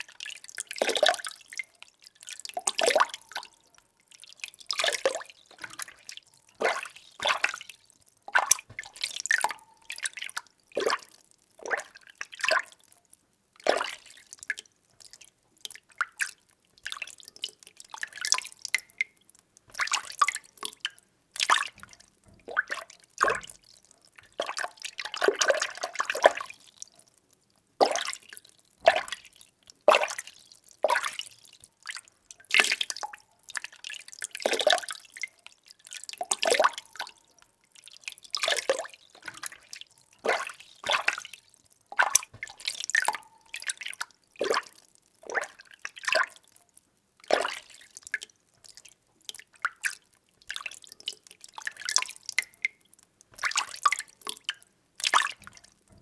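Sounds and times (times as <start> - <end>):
water sloshing when stirred: 4.6 - 12.7, 19.7 - 26.6, 38.0 - 46.4, 53.3 - 56.0.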